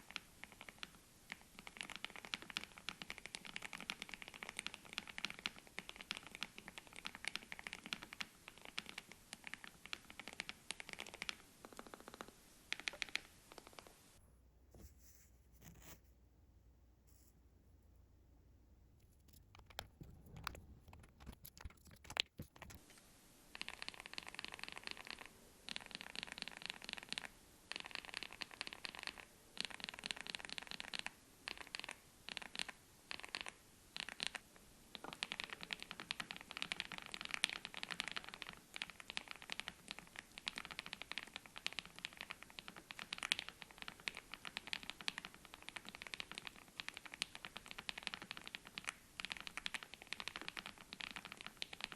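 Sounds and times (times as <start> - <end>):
mechanical keyboard clacking: 19.0 - 22.8.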